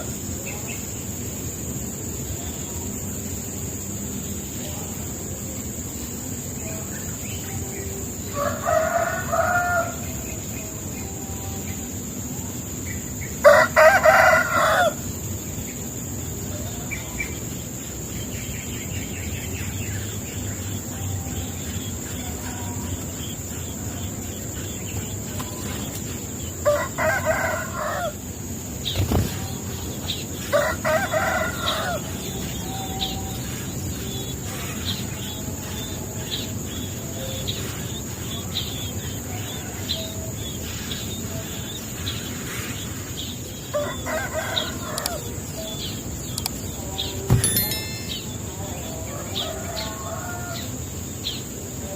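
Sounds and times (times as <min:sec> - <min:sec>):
rooster crowing: 0:08.2 - 0:10.3, 0:13.4 - 0:15.1, 0:26.6 - 0:28.2, 0:30.4 - 0:33.2, 0:43.7 - 0:45.8, 0:47.3 - 0:51.0.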